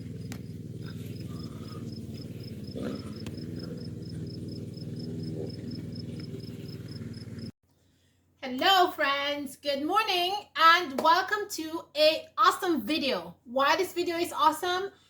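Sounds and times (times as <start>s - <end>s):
low motor-like drone: 0.0s - 7.5s
cricket chirping: 0.1s - 7.5s.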